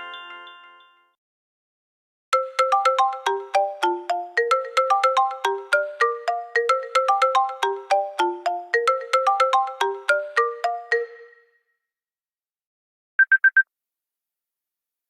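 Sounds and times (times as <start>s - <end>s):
electronic alarm ringtone: 2.4s - 11.6s.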